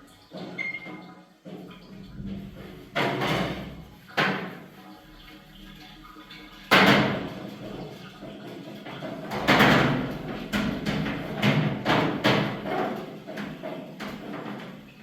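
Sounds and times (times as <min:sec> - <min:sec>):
sharp knocks and bangs: 0:01.6 - 0:04.6, 0:06.7 - 0:07.5, 0:08.9 - 0:14.7.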